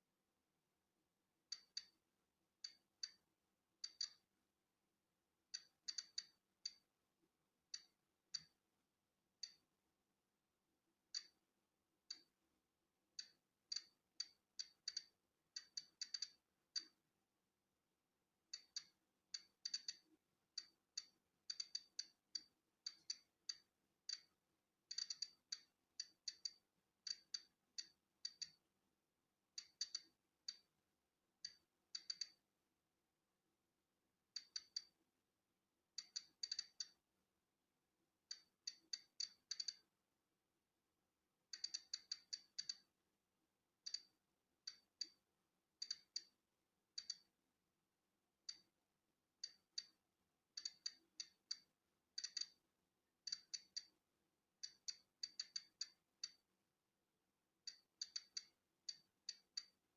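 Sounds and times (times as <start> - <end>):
geiger counter clicking: 1.5 - 2.0, 2.6 - 3.2, 3.8 - 4.3, 5.5 - 6.9, 7.8 - 8.6, 9.4 - 9.6, 11.1 - 11.4, 12.1 - 12.4, 13.2 - 17.0, 18.5 - 28.6, 29.6 - 30.7, 31.4 - 32.4, 34.3 - 35.0, 36.0 - 37.0, 38.3 - 39.9, 41.5 - 42.9, 43.8 - 45.2, 45.8 - 46.4, 47.0 - 47.3, 48.4 - 48.7, 49.4 - 50.0, 50.6 - 52.6, 53.2 - 54.0, 54.6 - 56.4, 57.6 - 59.8.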